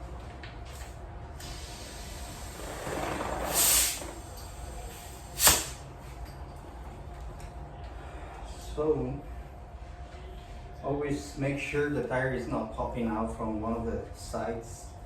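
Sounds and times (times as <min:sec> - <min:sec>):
air hissing at tire valve: 0:00.8 - 0:05.9.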